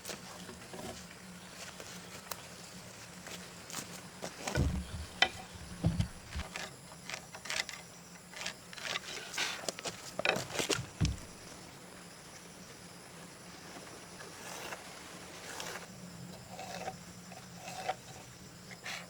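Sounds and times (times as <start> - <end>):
dull thumps: 4.5 - 6.5, 10.8 - 11.7
wood knocks and scrapes: 4.5 - 6.6, 10.2 - 11.7.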